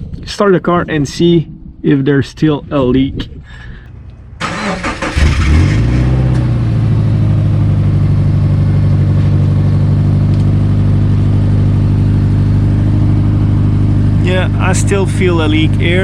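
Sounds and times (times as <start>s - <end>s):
car engine idling: 3.7s - 16.0s
exhaust leak: 4.4s - 6.5s.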